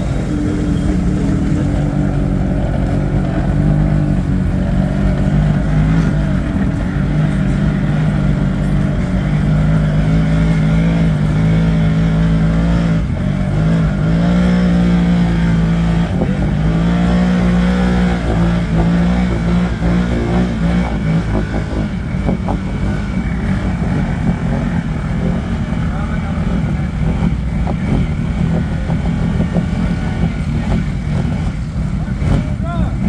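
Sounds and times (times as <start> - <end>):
atv engine revving: 0.0 - 33.0.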